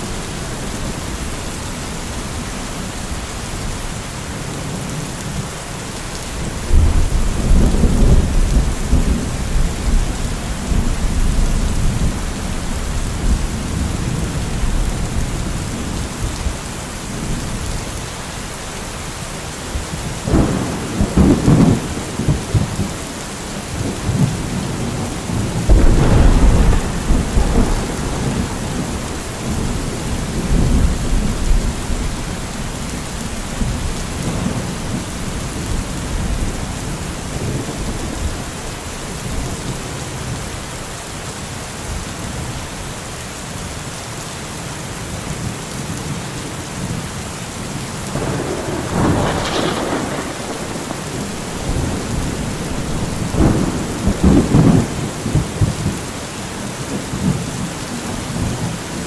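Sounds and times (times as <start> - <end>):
steady rain: 0.0 - 59.0
thunder rumbling: 6.6 - 17.9, 20.2 - 23.0, 23.7 - 40.0, 48.1 - 56.0.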